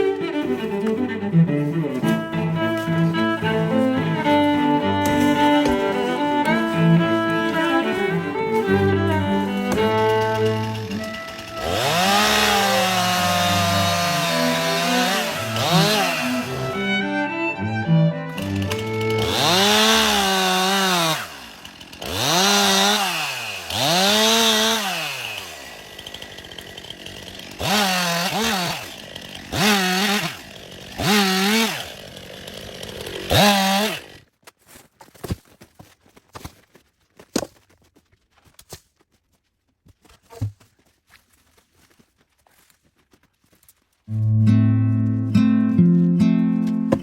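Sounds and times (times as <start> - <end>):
chainsaw revving: 0.0 - 34.3.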